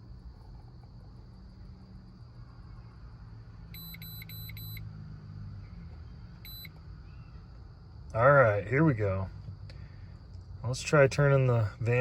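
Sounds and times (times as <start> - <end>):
low steady hum: 0.0 - 12.0
high-pitched electronic beeps: 3.8 - 4.8, 6.5 - 6.7.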